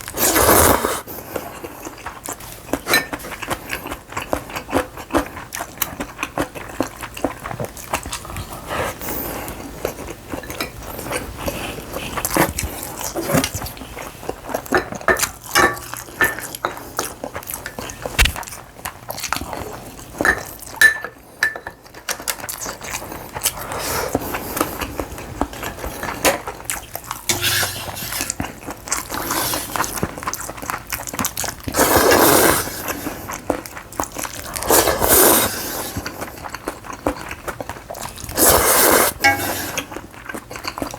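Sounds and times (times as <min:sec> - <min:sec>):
slurping noodles: 0:00.0 - 0:02.0, 0:27.5 - 0:30.1, 0:31.7 - 0:33.4, 0:34.4 - 0:36.5, 0:38.3 - 0:40.0
chewing and crunching: 0:00.0 - 0:40.9.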